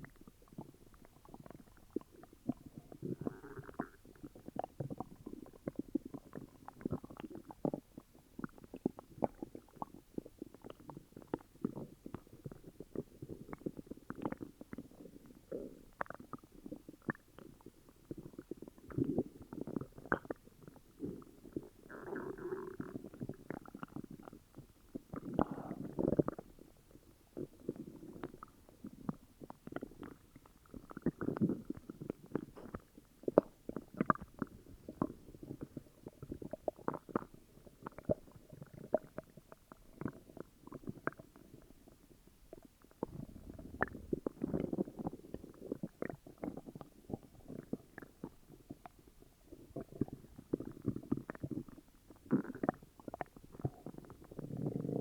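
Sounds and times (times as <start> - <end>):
stomach growling and gurgling: 0.0 - 55.0.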